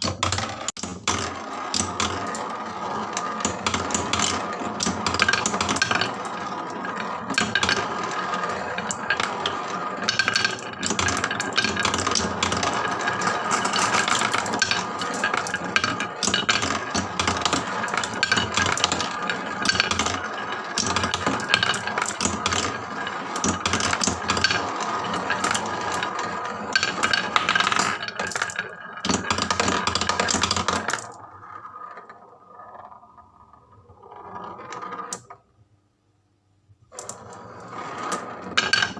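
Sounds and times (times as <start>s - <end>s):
marbles rolling down wooden tracks: 0.0s - 35.5s, 36.9s - 38.9s.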